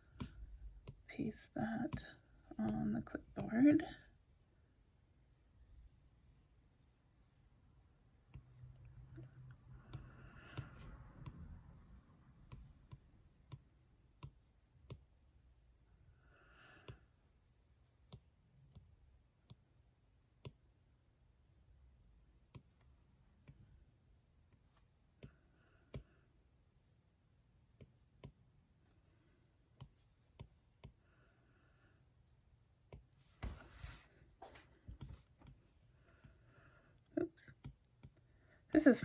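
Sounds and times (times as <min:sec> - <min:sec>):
stylus tapping tablet screen: 0:00.0 - 0:04.0, 0:08.2 - 0:15.2, 0:18.0 - 0:19.7, 0:27.7 - 0:28.6, 0:29.7 - 0:31.1, 0:32.8 - 0:36.4.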